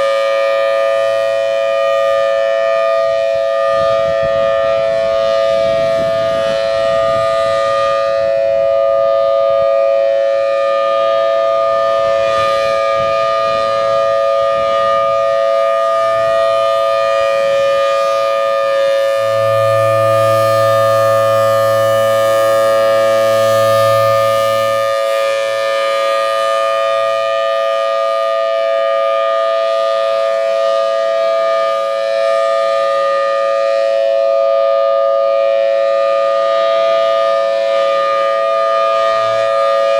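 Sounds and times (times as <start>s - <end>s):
tornado siren two-note chord: 0.0s - 39.9s
low hum: 18.3s - 25.8s.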